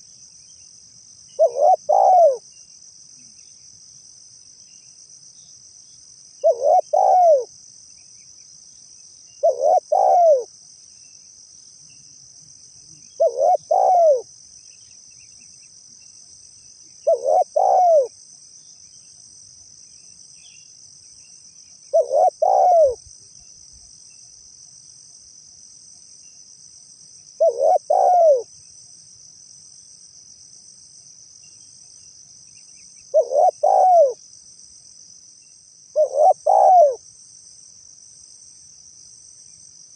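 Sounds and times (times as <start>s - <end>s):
dove cooing: 1.4s - 2.4s, 6.4s - 7.5s, 9.4s - 10.5s, 13.0s - 14.3s, 17.0s - 18.1s, 21.9s - 23.0s, 27.4s - 28.5s, 33.1s - 34.2s, 36.0s - 37.0s.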